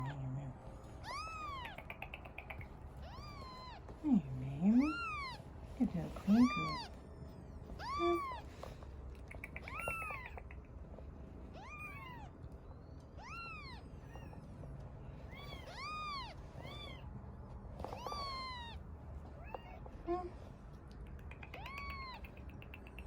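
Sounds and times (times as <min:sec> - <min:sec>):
kitten mewing: 0:01.0 - 0:05.4, 0:07.8 - 0:08.6, 0:09.2 - 0:10.8, 0:17.8 - 0:18.8, 0:21.0 - 0:23.0.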